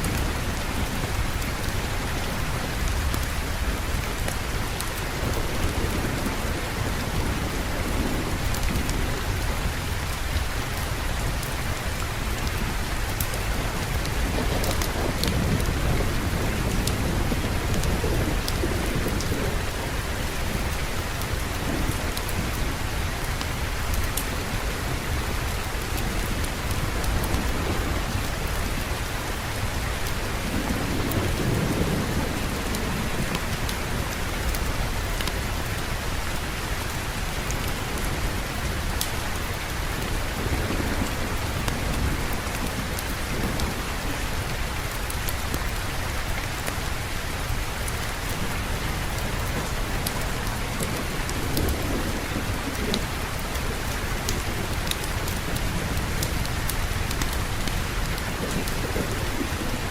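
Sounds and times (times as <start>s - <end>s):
heavy rain falling: 0.0s - 59.9s
low roll of thunder: 13.5s - 23.8s.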